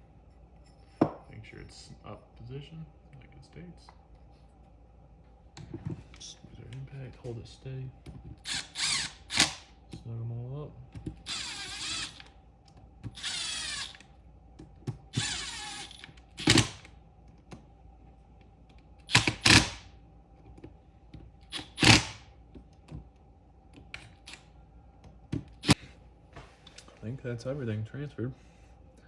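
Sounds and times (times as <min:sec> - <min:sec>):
impact driver driving screws: 0:08.5 - 0:09.7, 0:11.2 - 0:12.3, 0:13.1 - 0:14.1, 0:15.1 - 0:16.9, 0:19.1 - 0:19.9, 0:21.5 - 0:22.3.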